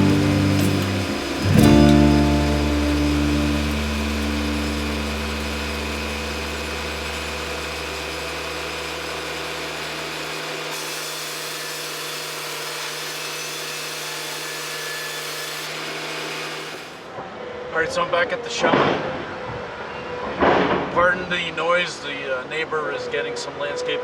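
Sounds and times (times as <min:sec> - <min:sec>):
deep low hum: 0:00.0 - 0:09.3
sawmill motor and saw running: 0:00.0 - 0:17.1.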